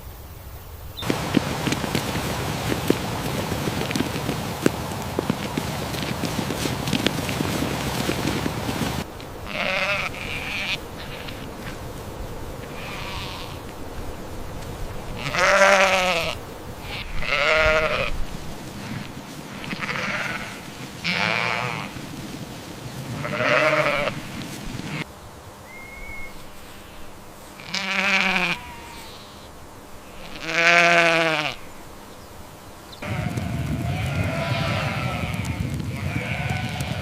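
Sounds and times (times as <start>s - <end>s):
sheep bleating: 9.4s - 11.5s, 12.7s - 13.6s, 15.2s - 18.1s, 18.8s - 22.0s, 23.2s - 24.2s, 27.6s - 29.4s, 30.1s - 31.7s, 33.0s - 37.0s.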